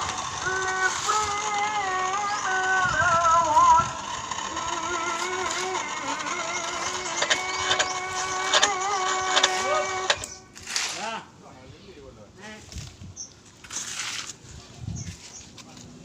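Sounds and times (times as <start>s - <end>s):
sharp clicks: 0.0s - 10.5s.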